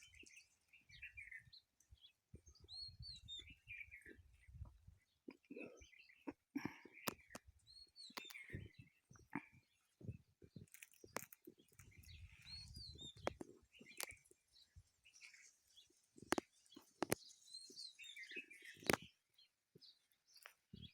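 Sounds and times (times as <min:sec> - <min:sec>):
small birds chirping: 0:00.0 - 0:20.9
sharp clicks and knocks: 0:16.3 - 0:17.2.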